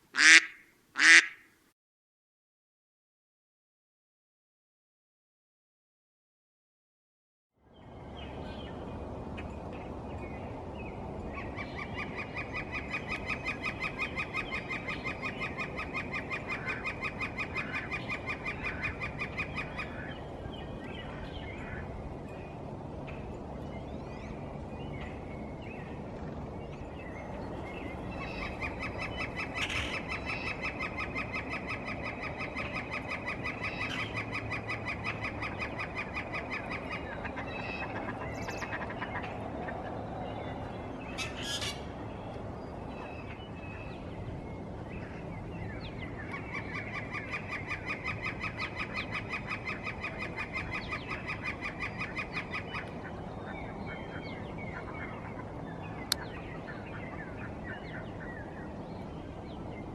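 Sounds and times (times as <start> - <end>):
bird rapid repeated call: 0.2 - 1.5.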